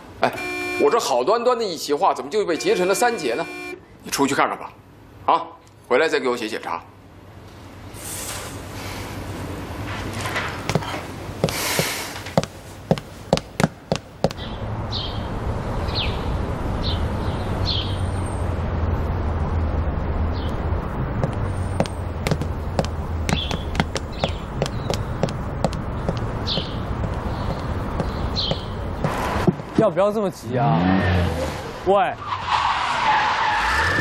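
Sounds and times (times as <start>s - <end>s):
quick sharp taps: 10.7s - 14.4s, 21.2s - 29.6s
low hum: 14.4s - 29.1s, 33.5s - 34.0s.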